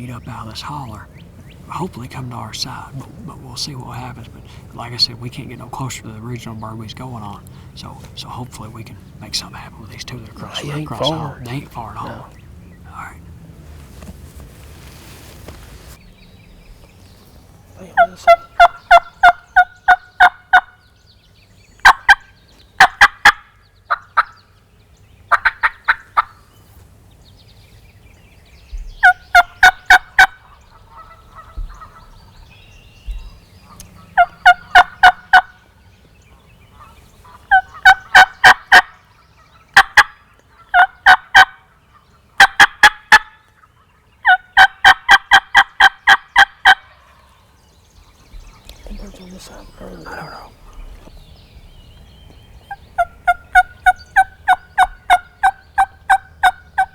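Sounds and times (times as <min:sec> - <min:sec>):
turkeys gobbling: 0:09.5 - 0:12.4, 0:17.8 - 0:20.8, 0:21.8 - 0:24.4, 0:25.3 - 0:26.4, 0:29.0 - 0:32.3, 0:33.7 - 0:35.7, 0:36.7 - 0:47.4, 0:52.6 - 0:56.9.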